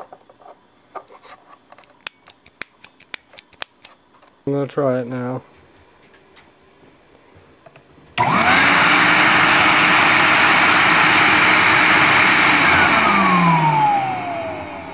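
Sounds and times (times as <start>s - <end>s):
vacuum cleaner motor: 8.2s - 14.9s.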